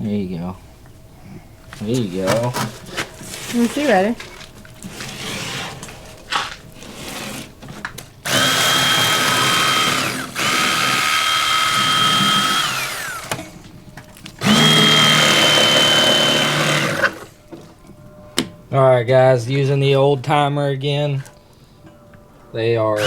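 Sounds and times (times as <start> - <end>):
electric knife motor whine: 8.2 - 13.6, 14.4 - 17.4.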